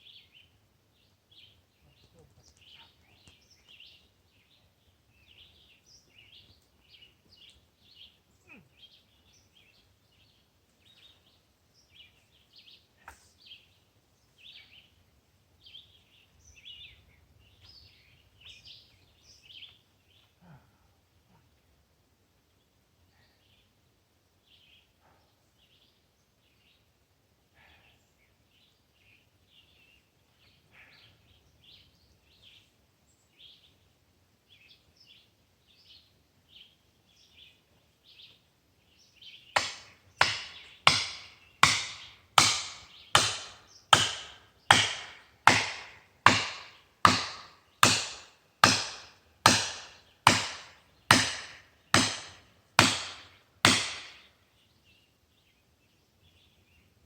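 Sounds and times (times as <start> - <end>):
birds chirping: 0.0 - 20.4, 27.7 - 57.0
hammer striking wedge: 39.6 - 54.2.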